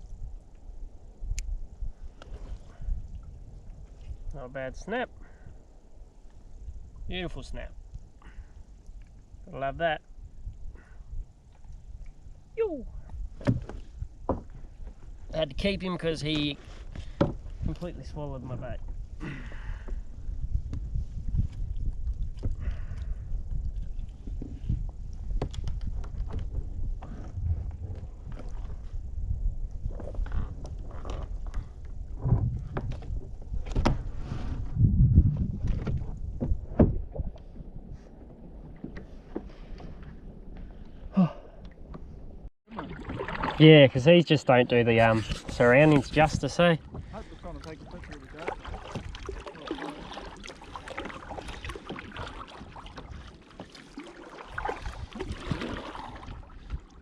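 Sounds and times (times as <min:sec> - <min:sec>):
wind rumble on microphone: 0:00.0 - 0:42.5, 0:44.8 - 0:57.0
water lapping against a hull: 0:00.0 - 0:57.0
low rumble: 0:23.1 - 0:30.5.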